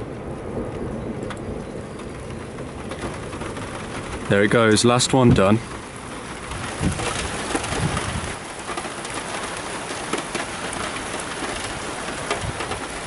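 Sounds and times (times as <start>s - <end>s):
heavy rain falling: 0.0s - 13.0s
small clicks and soft knocks: 0.7s - 4.2s.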